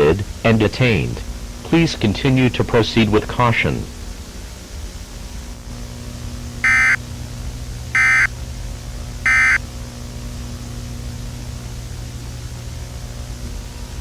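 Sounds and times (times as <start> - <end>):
steady low hum: 0.0 - 7.0, 7.7 - 8.3, 9.0 - 9.6
digital data tone bursts: 6.6 - 7.0, 8.0 - 8.3, 9.3 - 9.6.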